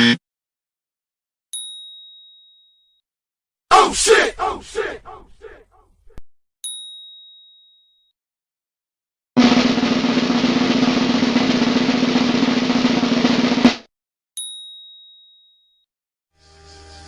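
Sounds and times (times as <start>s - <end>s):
high bell ding: 6.7s - 8.0s, 14.4s - 15.7s
snare drum roll: 9.4s - 13.9s.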